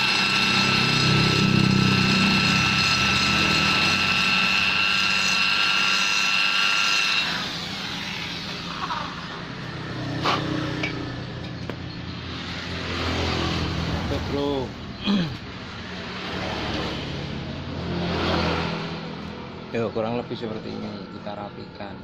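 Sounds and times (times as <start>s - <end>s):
rotary grinder whining: 0.0s - 16.5s.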